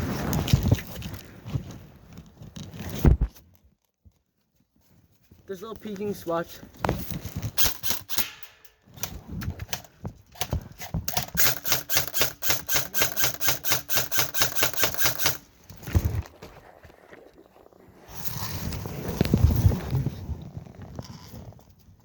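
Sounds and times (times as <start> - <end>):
airsoft gun firing bursts: 7.6 - 8.6, 11.1 - 15.5
gun mechanism whine: 11.1 - 15.5.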